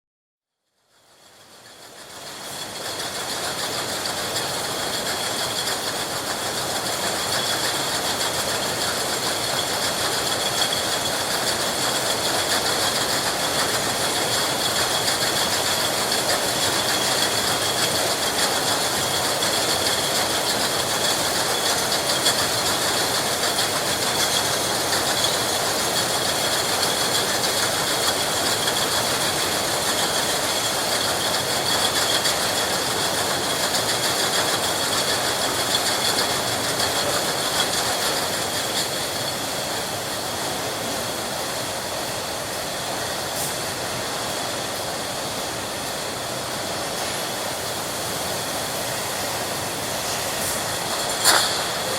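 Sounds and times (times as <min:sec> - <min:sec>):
mechanical rattle of machinery: 0:01.6 - 0:39.6, 0:50.4 - 0:51.9.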